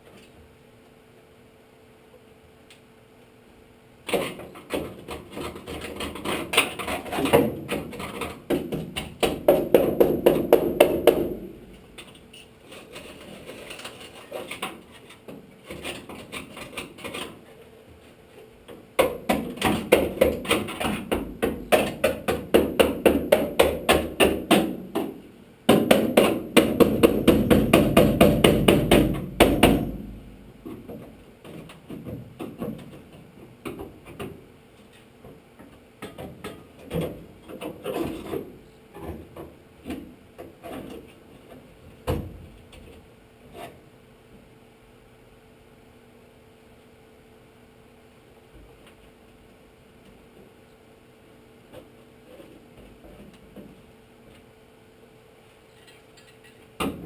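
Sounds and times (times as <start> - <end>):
rapid hammer strikes: 4.1 - 11.5, 19.0 - 30.1.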